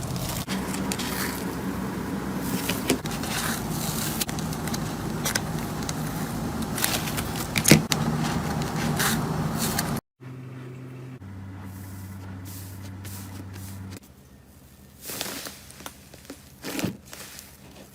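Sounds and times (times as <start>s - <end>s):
constant low hum: 0.0s - 17.9s.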